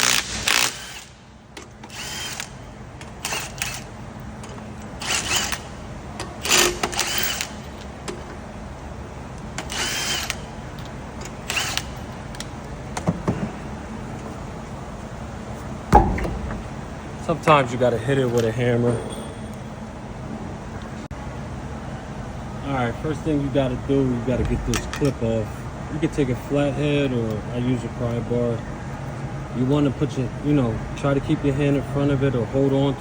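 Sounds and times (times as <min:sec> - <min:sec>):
impact wrench spinning: 0:05.0 - 0:05.8, 0:06.4 - 0:07.6, 0:16.0 - 0:16.8
hammer knocking on wheel: 0:16.0 - 0:16.8.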